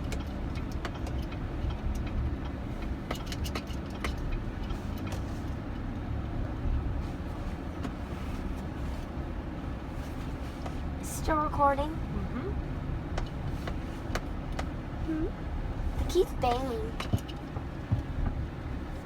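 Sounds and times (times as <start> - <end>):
light clicks and rattles: 0.0 - 5.9, 16.0 - 18.4
engine and road rumble: 0.0 - 19.0.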